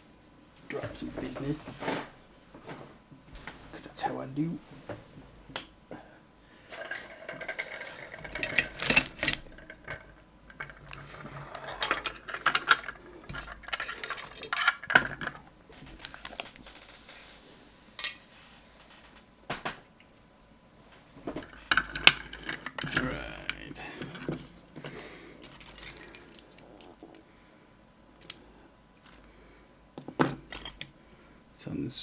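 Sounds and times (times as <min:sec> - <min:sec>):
small metal parts clinking: 0:06.7 - 0:15.4, 0:21.6 - 0:27.2, 0:28.2 - 0:28.4.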